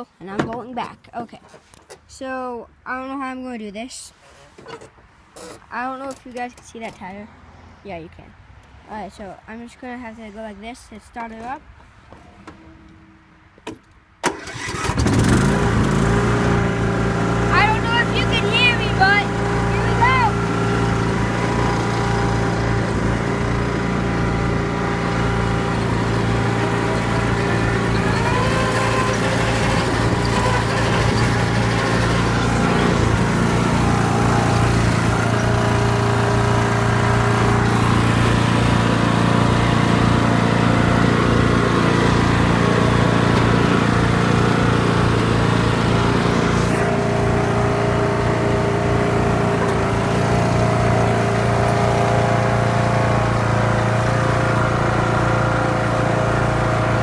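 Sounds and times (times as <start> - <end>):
riding lawn mower engine running: 14.2 - 57.0.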